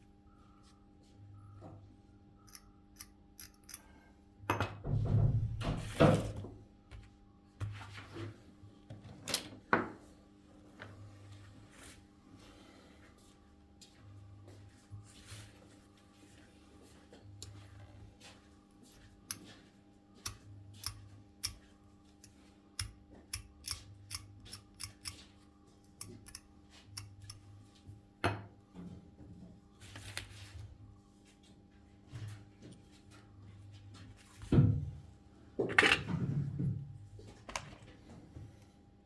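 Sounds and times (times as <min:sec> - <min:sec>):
faint electrical hum: 0:00.0 - 0:39.0
metal hand tools clicking: 0:02.5 - 0:03.8, 0:22.8 - 0:25.2, 0:26.0 - 0:26.4.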